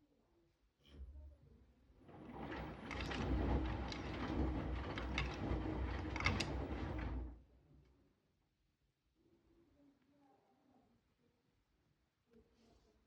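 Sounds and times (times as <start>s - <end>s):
washing machine motor hum: 2.1s - 7.4s.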